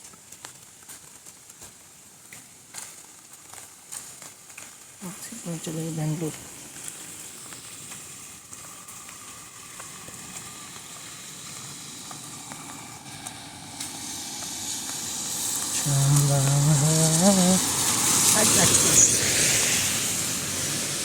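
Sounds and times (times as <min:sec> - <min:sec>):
rain hiss: 0:00.0 - 0:21.0
person speaking: 0:15.8 - 0:17.7, 0:18.3 - 0:19.2.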